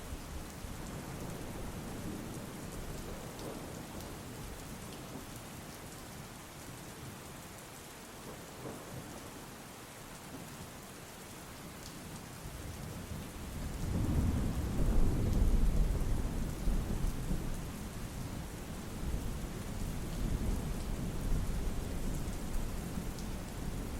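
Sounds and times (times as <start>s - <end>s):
steady rain: 0.0s - 23.9s
low thunder rolling: 13.8s - 17.5s.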